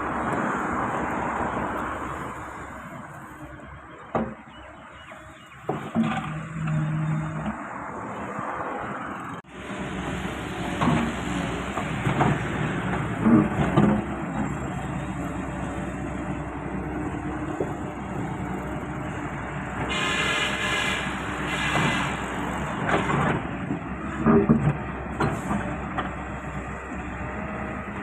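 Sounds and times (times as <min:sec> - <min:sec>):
excavator engine running: 0:00.0 - 0:28.0
digging knocks and clatter: 0:10.7 - 0:14.7.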